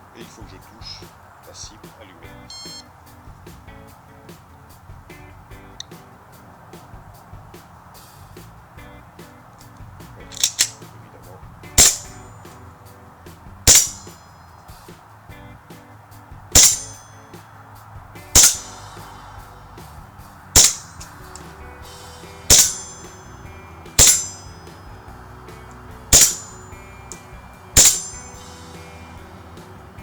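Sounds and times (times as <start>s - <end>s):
airsoft gun shots: 10.2s - 10.9s, 11.8s - 12.6s, 13.6s - 14.2s, 16.5s - 17.1s, 18.3s - 19.1s, 20.6s - 21.5s, 22.4s - 24.8s, 26.0s - 28.4s
pellet clanging on metal plate: 10.2s - 10.9s, 11.8s - 12.7s, 13.7s - 14.4s, 16.6s - 17.4s, 18.4s - 18.8s, 20.6s - 30.0s.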